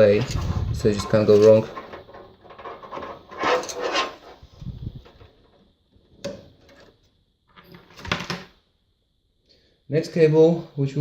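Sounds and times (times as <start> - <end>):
cables rustling: 0.0 - 5.8.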